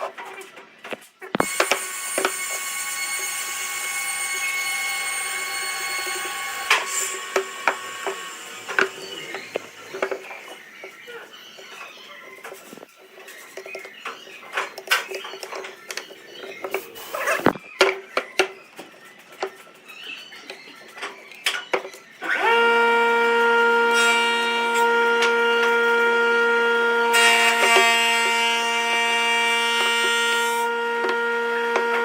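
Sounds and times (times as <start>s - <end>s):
wood lathe motor whining hum: 1.4s - 10.6s, 22.2s - 32.0s.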